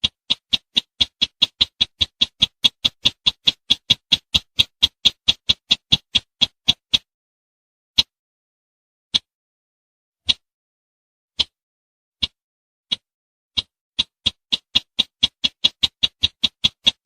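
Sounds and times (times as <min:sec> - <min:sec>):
bird ticking call: 0:00.0 - 0:07.0, 0:12.2 - 0:17.0.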